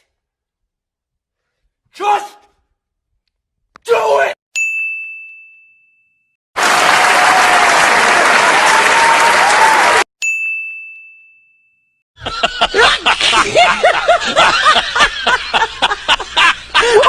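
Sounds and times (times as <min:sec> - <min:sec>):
bell-like ding: 0:04.6 - 0:06.4, 0:10.2 - 0:12.0
crowd applause and cheering: 0:06.6 - 0:10.1.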